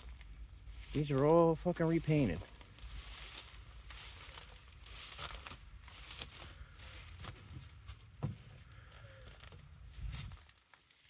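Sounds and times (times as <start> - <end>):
footsteps crunching on dry ground: 0.0 - 11.0
wind rumble on microphone: 9.7 - 10.4.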